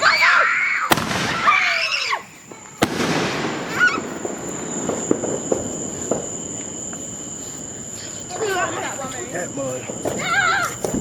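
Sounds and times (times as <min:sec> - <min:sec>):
firework crackling and pops: 0:00.0 - 0:11.0
firework bang: 0:00.9 - 0:07.3, 0:09.8 - 0:11.0.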